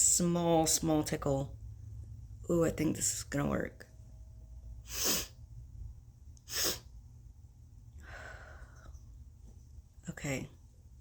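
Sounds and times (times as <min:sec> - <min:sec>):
woman's sharp nasal breath burst: 0:04.8 - 0:05.4, 0:06.4 - 0:06.9.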